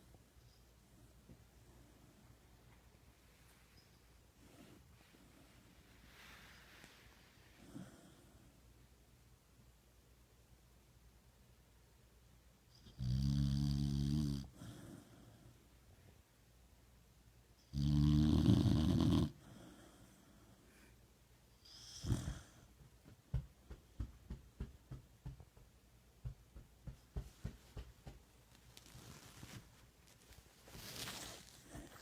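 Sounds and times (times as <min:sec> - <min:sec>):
dog snoring: 0:12.8 - 0:15.4, 0:17.7 - 0:20.2, 0:21.6 - 0:22.7.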